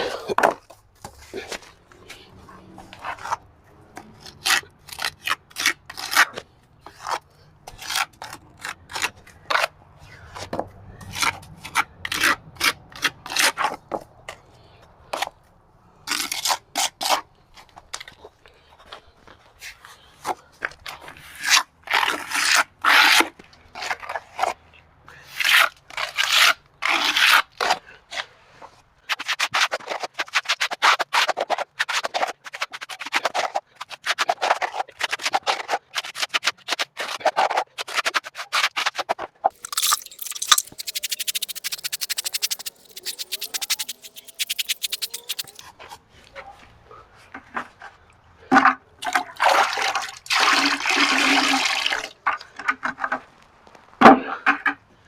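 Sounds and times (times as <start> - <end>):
hand tool scraping stucco wall: 4.2 - 9.7, 21.2 - 24.2, 29.0 - 45.6.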